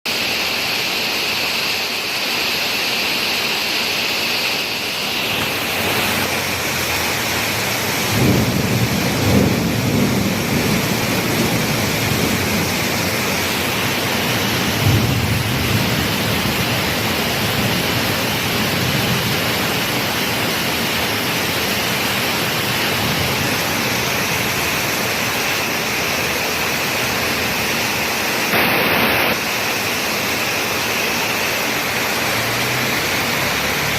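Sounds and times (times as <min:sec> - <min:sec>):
rain falling: 0:00.1 - 0:33.9
low rolls of thunder: 0:07.3 - 0:19.8.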